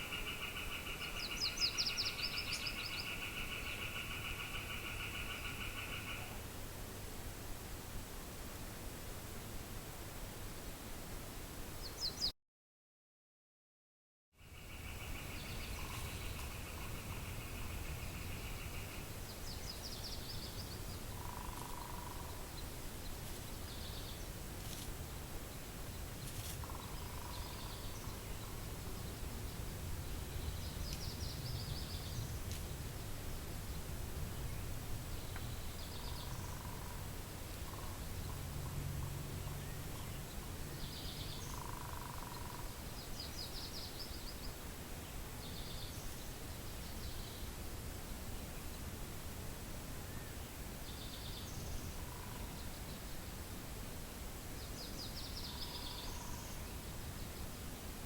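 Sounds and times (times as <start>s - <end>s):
songbirds calling: 0.0s - 6.5s, 14.4s - 49.0s, 50.0s - 53.4s, 54.0s - 57.6s
low wind rumble: 14.4s - 58.0s.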